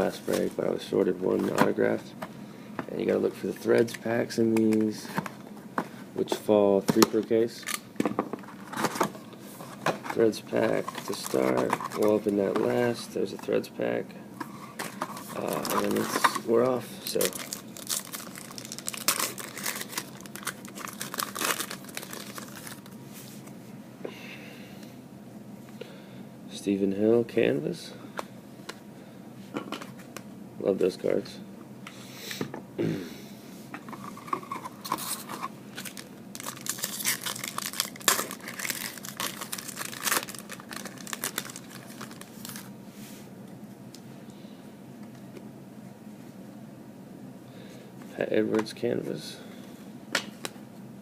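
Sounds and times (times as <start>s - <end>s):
card pack wrapper tearing and crinkling: 10.6s - 12.4s, 15.2s - 23.0s, 34.5s - 42.7s.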